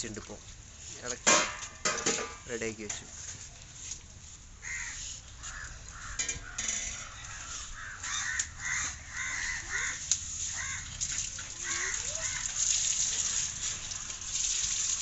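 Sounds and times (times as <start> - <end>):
birds making harsh calls: 4.6 - 11.0, 11.6 - 12.6.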